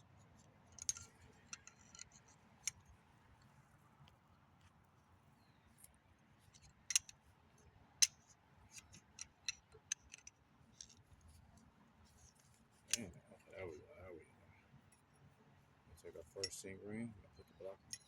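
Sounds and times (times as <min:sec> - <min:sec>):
sharp metallic clicks: 0:00.8 - 0:02.8.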